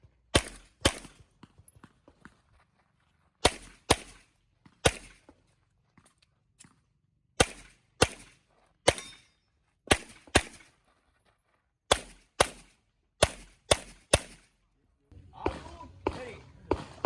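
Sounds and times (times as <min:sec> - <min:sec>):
handgun shots: 0:07.4 - 0:09.3, 0:09.9 - 0:10.7, 0:11.9 - 0:14.5.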